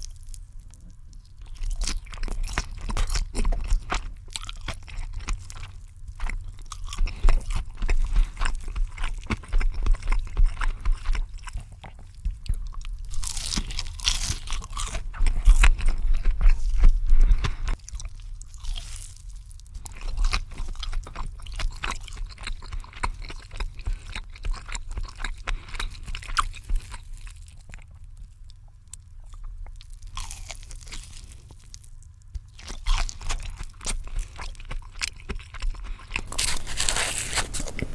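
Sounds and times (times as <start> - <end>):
wet chewing: 0.0 - 31.8, 32.4 - 37.9
crunchy bites: 1.5 - 17.8, 32.4 - 37.9.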